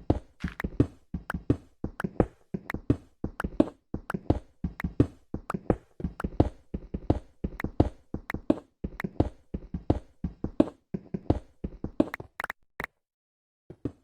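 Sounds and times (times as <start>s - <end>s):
sharp knocks and taps: 11.6s - 12.5s.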